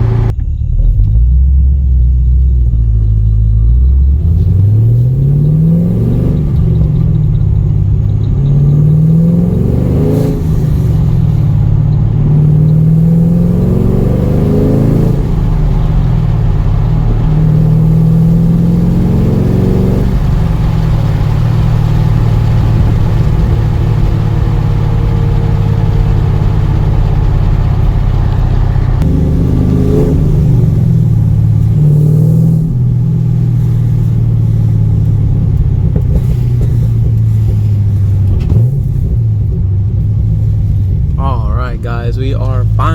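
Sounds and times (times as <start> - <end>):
car engine accelerating: 0.0 - 42.9.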